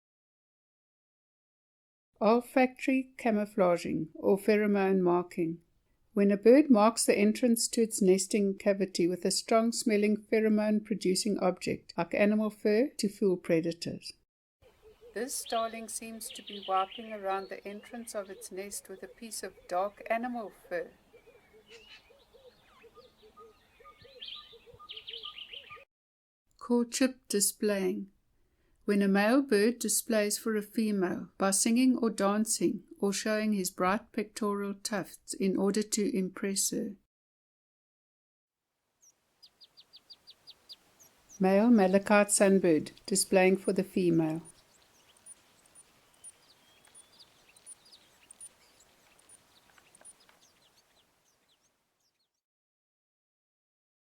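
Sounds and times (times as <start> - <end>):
birds chirping and twittering: 14.6 - 25.9, 39.0 - 52.4
soft background hiss: 39.0 - 51.9.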